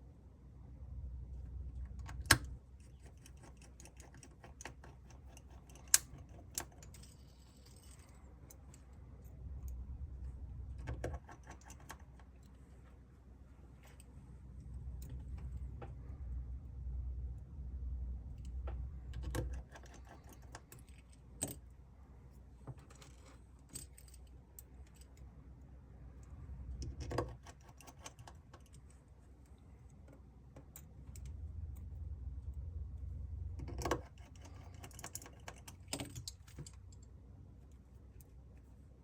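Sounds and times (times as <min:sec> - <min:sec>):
low hum: 0:00.0 - 0:02.9, 0:06.8 - 0:11.1, 0:12.4 - 0:22.6, 0:30.6 - 0:39.0
tools and screws clicking: 0:01.8 - 0:12.6, 0:18.4 - 0:21.7, 0:26.2 - 0:32.0, 0:33.6 - 0:38.3.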